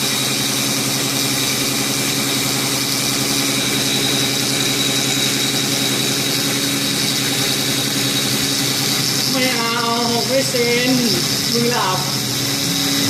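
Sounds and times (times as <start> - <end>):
milling machine high whine: 0.0 - 13.0
person talking: 9.3 - 12.2.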